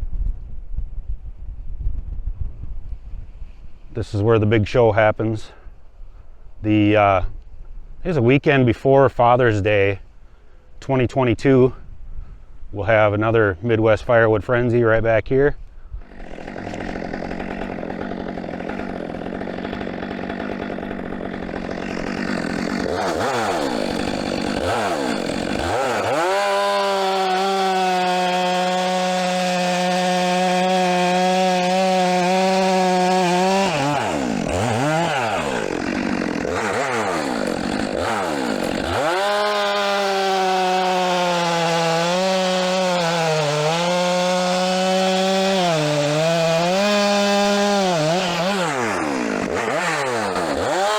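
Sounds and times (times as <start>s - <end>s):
chainsaw cutting wood: 16.0s - 50.9s.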